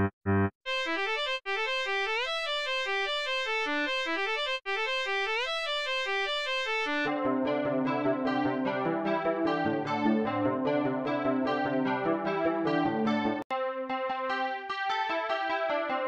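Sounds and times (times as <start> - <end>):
lower instrument notes: 7.0 - 13.4.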